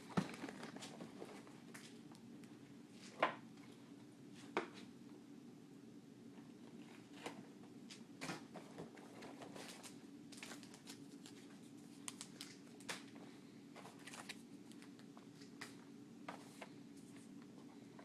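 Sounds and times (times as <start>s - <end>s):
trading card packs rustling: 0.0s - 2.0s, 6.7s - 18.0s.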